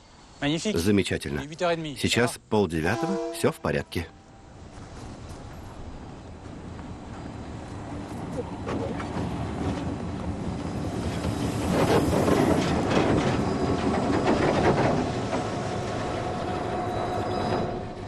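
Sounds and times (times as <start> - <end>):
train wheels clacking over joints: 8.0 - 18.0.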